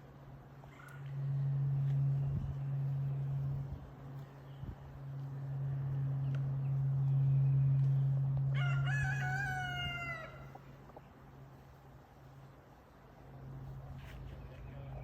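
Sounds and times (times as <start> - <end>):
steady low hum: 0.0 - 15.0
rooster crowing: 8.5 - 10.6.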